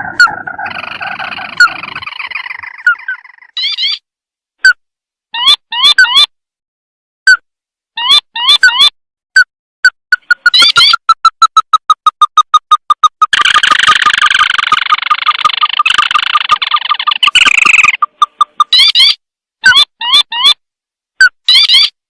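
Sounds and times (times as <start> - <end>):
crake calls and trill: 0.0 - 4.0, 10.1 - 20.6.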